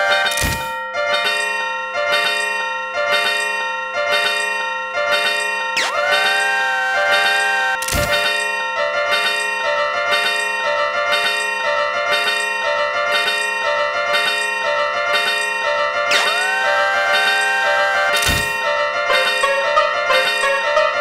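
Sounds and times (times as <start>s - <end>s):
level crossing bells clanging: 0.0s - 21.0s.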